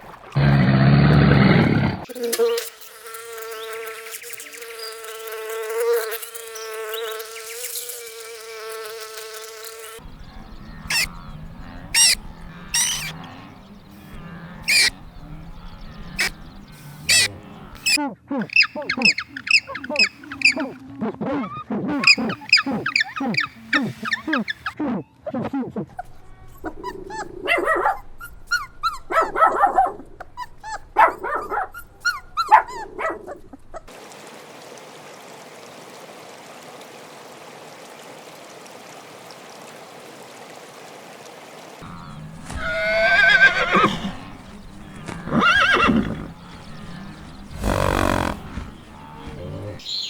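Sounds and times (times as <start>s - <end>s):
short animal calls: 10.8s - 11.2s, 11.8s - 13.4s, 14.0s - 15.0s, 41.8s - 49.8s
horse whinnying: 42.4s - 49.8s.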